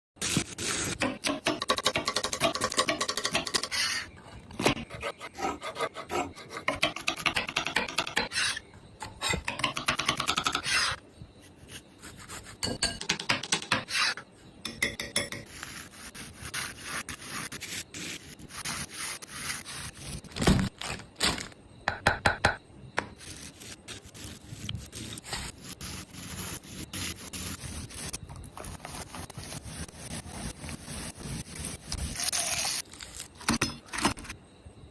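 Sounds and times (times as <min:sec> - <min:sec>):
rubbing and scraping: 0:23.2 - 0:32.8.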